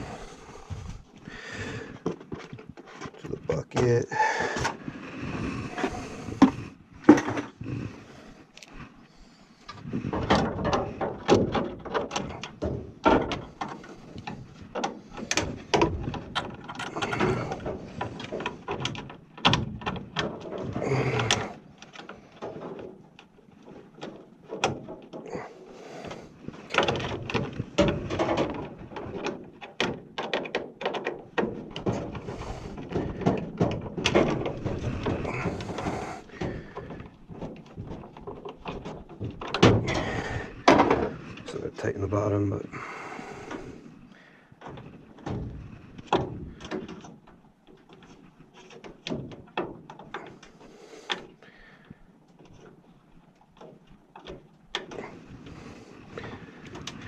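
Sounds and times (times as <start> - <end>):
scraping and rattling: 0.0 - 43.8.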